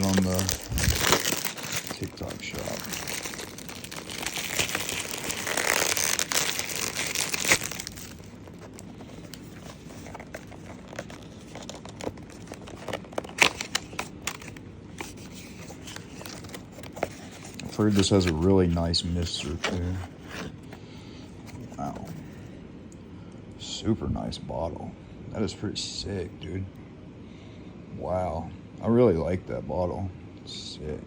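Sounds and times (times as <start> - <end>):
plastic wrapping crinkling: 0.0 - 20.6.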